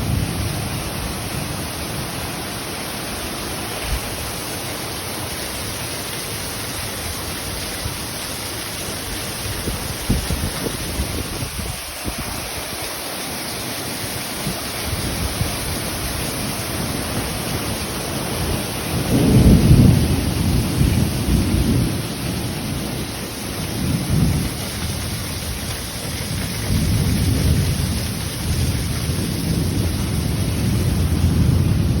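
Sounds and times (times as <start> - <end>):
steady rain: 0.0 - 32.0
rolling thunder: 18.3 - 32.0.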